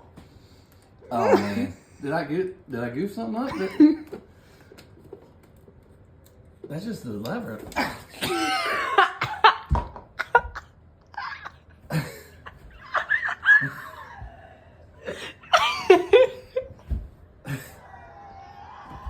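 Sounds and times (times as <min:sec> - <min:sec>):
man laughing: 0:01.1 - 0:01.8, 0:03.4 - 0:04.2, 0:07.8 - 0:16.8.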